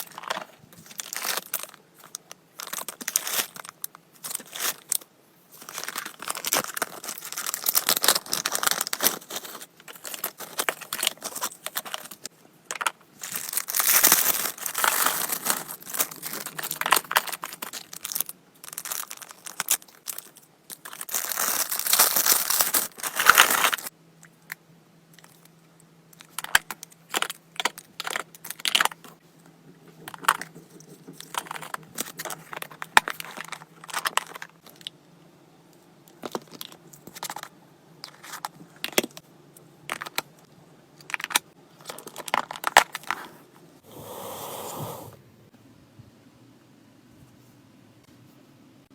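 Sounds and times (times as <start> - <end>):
packaging crinkling and tearing: 0.0 - 5.0, 5.6 - 23.9.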